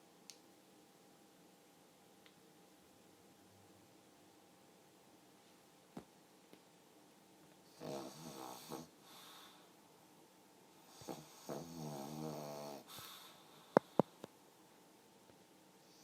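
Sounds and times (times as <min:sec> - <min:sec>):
dog snoring: 0:07.7 - 0:09.6, 0:10.8 - 0:14.0.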